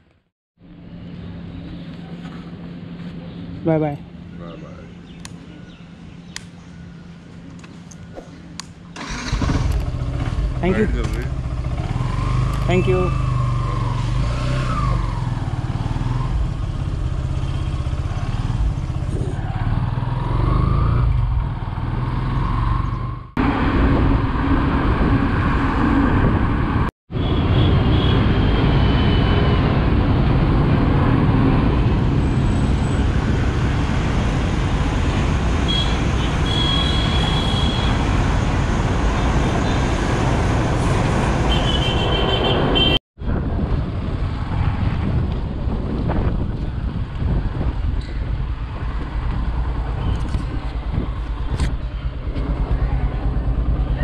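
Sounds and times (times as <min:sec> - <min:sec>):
surrounding traffic: 0:00.0 - 0:54.0
wind and road noise: 0:00.0 - 0:54.0
motorcycle engine running: 0:09.0 - 0:14.0, 0:48.4 - 0:54.0.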